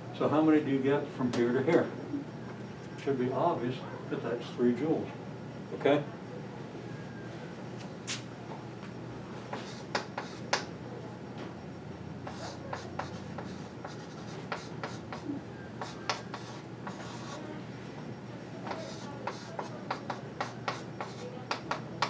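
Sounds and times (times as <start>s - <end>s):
pen scratching on paper: 12.3s - 15.2s, 15.8s - 17.4s, 18.7s - 21.8s.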